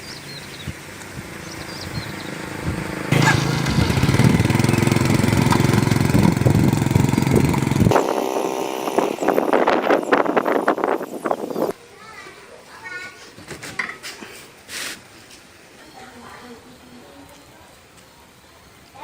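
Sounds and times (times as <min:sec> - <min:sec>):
motor running with low hum: 0:01.6 - 0:11.7.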